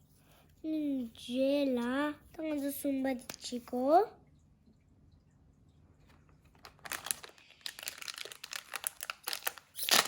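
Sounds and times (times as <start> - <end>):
packaging crinkling: 6.5 - 10.0.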